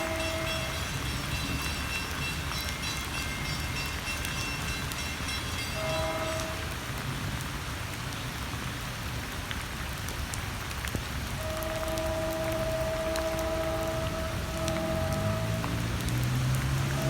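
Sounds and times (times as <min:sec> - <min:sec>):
distant train horn: 0:00.0 - 0:07.2, 0:11.3 - 0:17.0
steady rain: 0:00.0 - 0:17.0.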